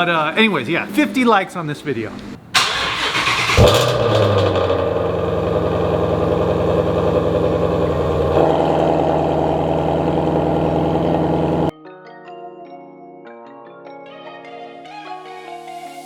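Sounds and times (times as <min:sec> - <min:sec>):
car engine idling: 0:02.0 - 0:11.7.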